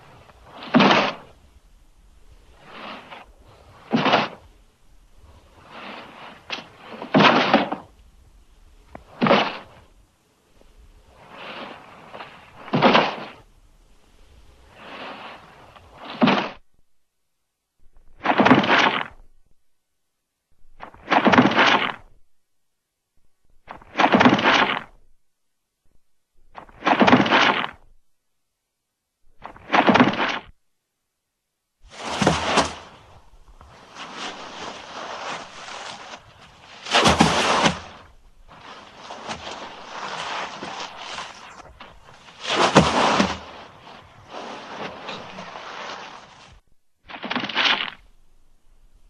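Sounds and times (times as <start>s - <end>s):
shuffling and rustling: 2.2s - 16.6s, 31.8s - 48.2s
body falling heavily: 31.9s - 46.6s.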